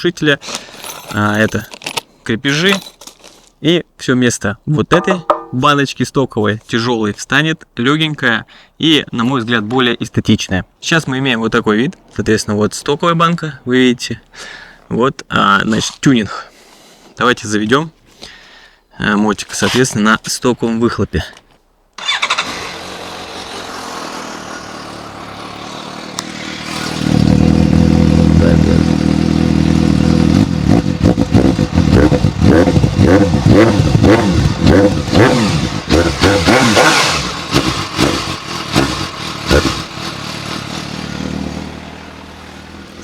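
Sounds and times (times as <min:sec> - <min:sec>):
motorcycle engine revving: 0:22.0 - 0:43.0.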